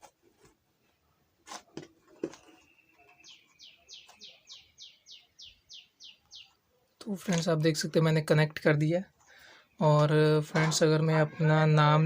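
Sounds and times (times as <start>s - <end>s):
bird calling and chirping: 2.3s - 6.6s.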